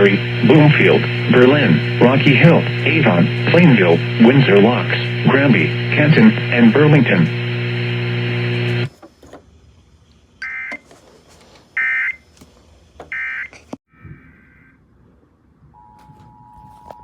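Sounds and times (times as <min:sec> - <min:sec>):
steady buzz: 0:00.0 - 0:13.8.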